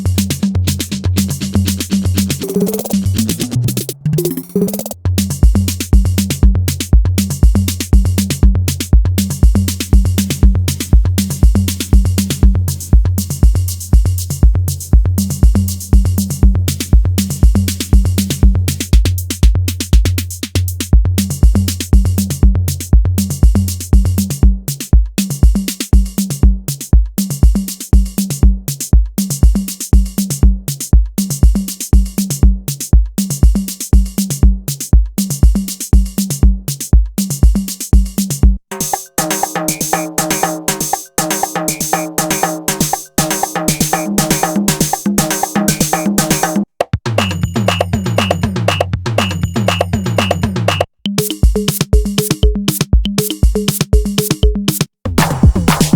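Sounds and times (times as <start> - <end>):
drum machine kick drum: 0.0 - 3.8, 4.9 - 55.9
hi-hats ticking: 0.0 - 55.9
low bass tone: 47.1 - 50.7.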